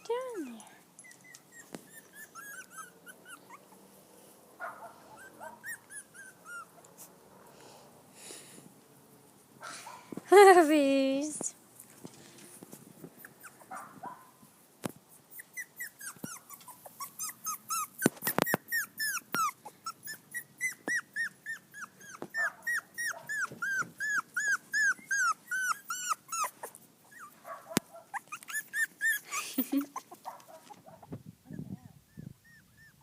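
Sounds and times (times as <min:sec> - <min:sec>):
puppy whimpering: 0:00.0 - 0:03.9, 0:05.0 - 0:07.0, 0:13.2 - 0:14.0, 0:15.3 - 0:27.5, 0:28.1 - 0:33.0.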